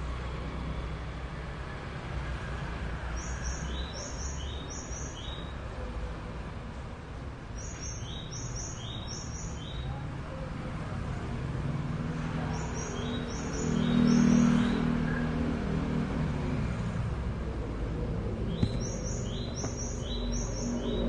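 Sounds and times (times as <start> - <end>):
bird chirping: 3.2 - 5.6, 7.6 - 10.0, 12.4 - 15.3, 18.4 - 21.0.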